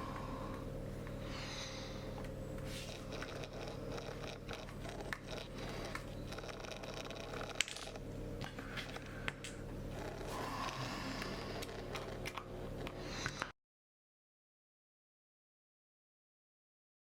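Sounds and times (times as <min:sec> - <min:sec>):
steady low hum: 0:00.0 - 0:13.6.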